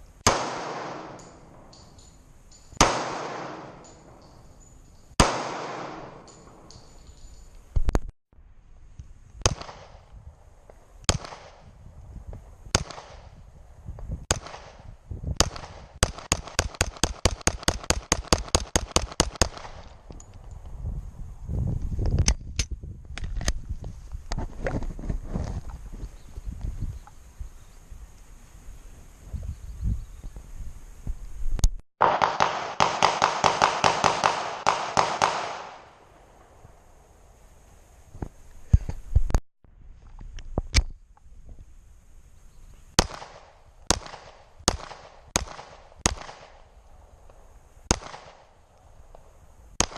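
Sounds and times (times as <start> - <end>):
pistol shots: 0.2 - 1.9, 2.8 - 4.4, 5.2 - 6.8, 9.4 - 10.0, 11.1 - 11.7, 12.7 - 13.2, 14.3 - 20.0, 32.0 - 36.4, 43.0 - 46.7, 47.9 - 48.6
handgun shots: 2.8 - 4.2, 5.2 - 6.8, 32.0 - 35.9, 43.0 - 46.6.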